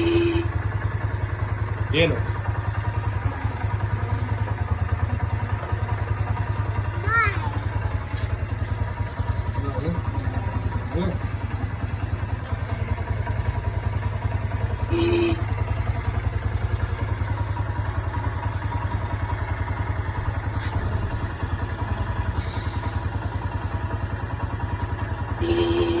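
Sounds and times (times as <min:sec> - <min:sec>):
motorcycle horn beeps: 0:00.0 - 0:01.7, 0:11.4 - 0:16.7, 0:23.0 - 0:26.0
motorcycle engine idling: 0:00.0 - 0:26.0.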